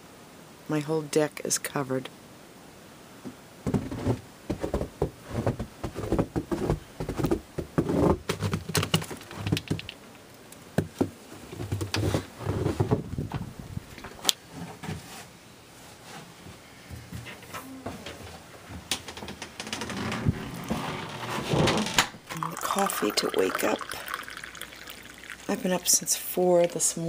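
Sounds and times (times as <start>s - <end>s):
handling knocks and clicks: 3.7s - 10.0s.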